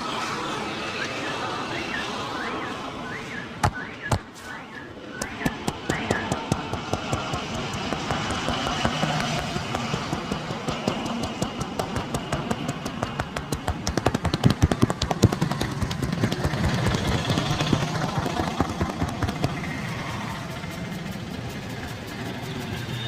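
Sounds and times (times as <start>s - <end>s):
street traffic rumble: 0.0s - 23.0s
hands slapping and tapping a body: 5.2s - 17.0s.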